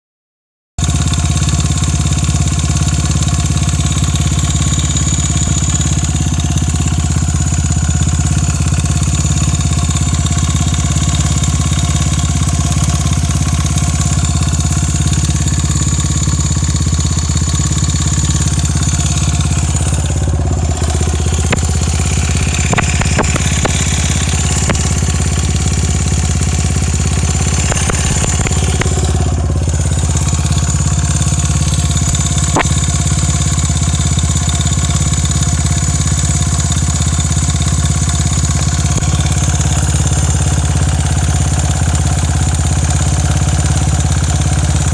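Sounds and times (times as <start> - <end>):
motorcycle engine idling: 0.8 - 44.9
sharp ticks: 17.0 - 33.4.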